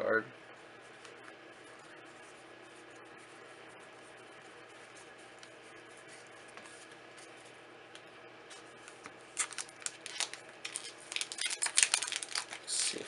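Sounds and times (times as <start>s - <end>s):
faint room hum: 0.0s - 13.0s
cards crackling and rustling: 8.9s - 13.0s.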